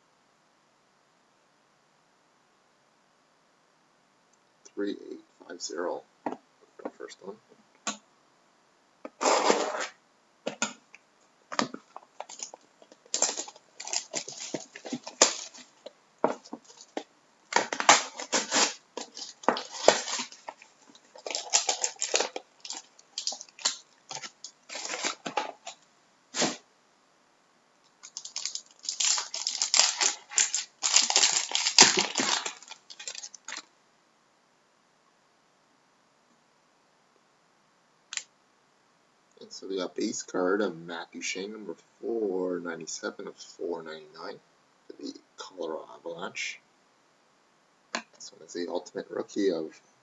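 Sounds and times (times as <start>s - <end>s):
wrapping torn and crinkled: 11.6s - 25.8s, 28.0s - 33.7s.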